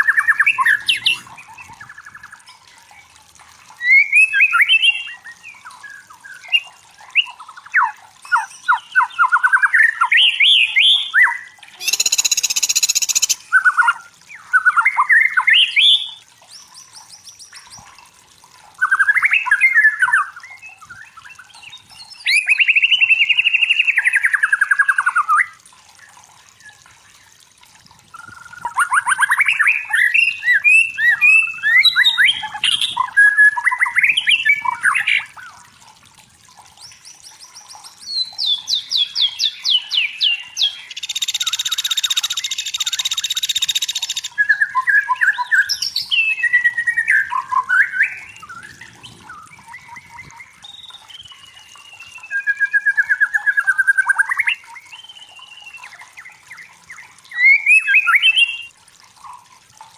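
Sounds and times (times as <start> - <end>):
songbird whistling and trilling: 3.8 - 17.8, 28.1 - 35.4, 36.8 - 58.7.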